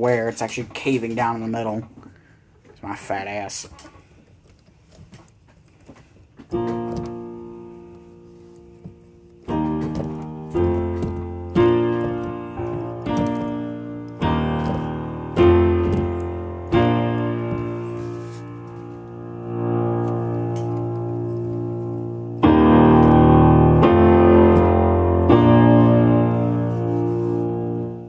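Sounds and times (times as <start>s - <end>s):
piano chords: 6.5s - 28.0s.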